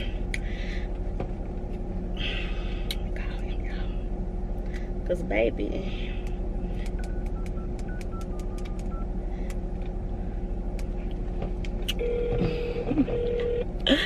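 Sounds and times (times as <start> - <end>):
car engine idling: 0.0 - 14.0
phone ringing tone: 12.0 - 13.7.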